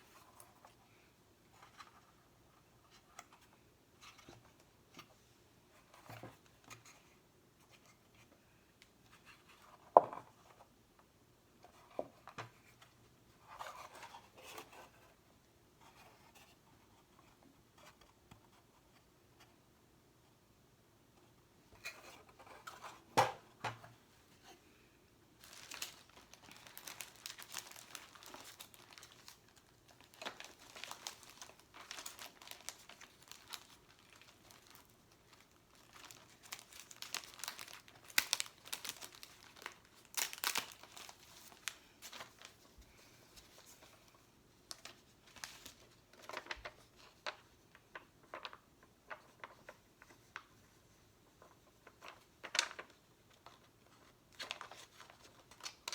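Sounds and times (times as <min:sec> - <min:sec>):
sticker sheets crinkling: 0:25.4 - 0:42.7.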